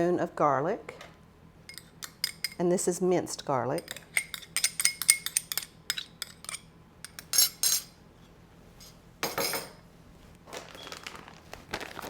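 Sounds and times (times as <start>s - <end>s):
spoon clinking against dish: 3.8s - 7.9s
spoon scraping dish: 3.8s - 7.9s.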